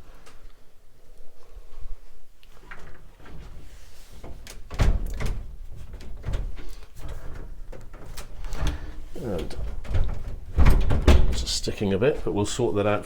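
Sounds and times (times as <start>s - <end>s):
wooden door knocks and rattles: 2.8s - 12.2s.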